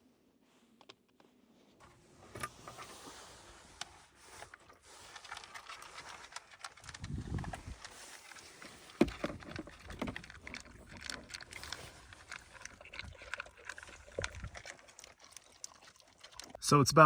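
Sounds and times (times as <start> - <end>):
dogs eating from bowls: 2.5 - 17.0.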